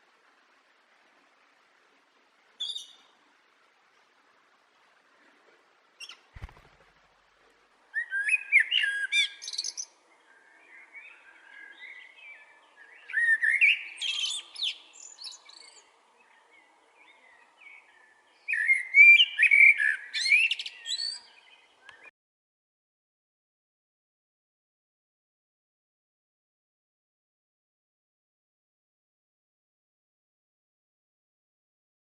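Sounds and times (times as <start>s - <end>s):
bird twittering: 6.0s - 6.9s.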